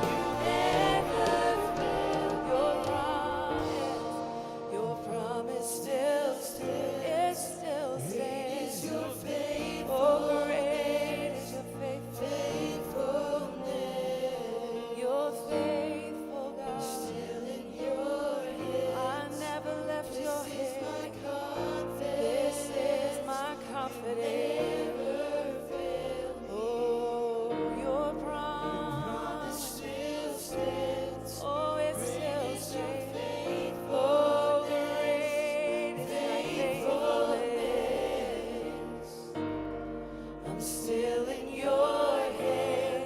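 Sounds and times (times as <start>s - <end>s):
low bass line: 0.0s - 4.8s, 28.5s - 29.5s
instrumental accompaniment: 0.0s - 6.0s
choir singing: 0.0s - 43.0s.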